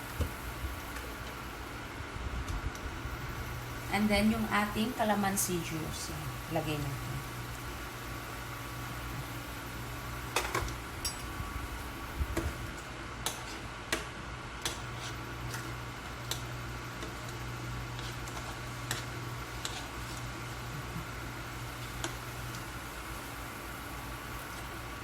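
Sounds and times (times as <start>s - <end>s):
steady low hum: 0.0s - 25.0s
sauce simmering ticks: 21.7s - 22.8s.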